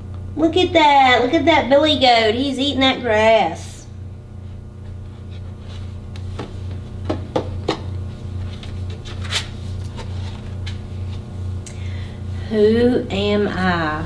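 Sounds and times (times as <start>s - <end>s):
low electrical hum: 0.0s - 14.0s
book page turning: 8.4s - 11.2s.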